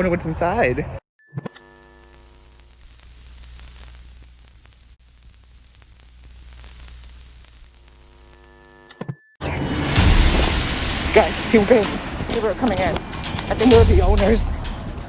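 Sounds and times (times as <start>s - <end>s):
television static hiss: 1.2s - 9.3s
steady low hum: 1.2s - 9.4s.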